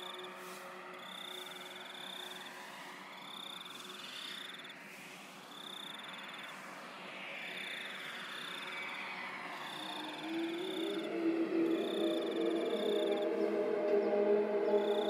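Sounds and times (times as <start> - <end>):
sweeping pitch-shifted layers: 0.0 - 15.0
pulsing insect-like chirp: 3.2 - 4.7, 5.5 - 6.6, 7.4 - 15.0.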